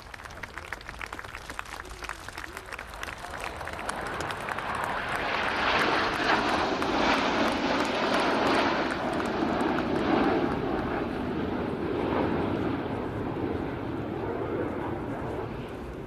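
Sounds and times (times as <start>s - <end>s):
applause: 0.0s - 11.2s
jets flying past: 2.8s - 16.0s.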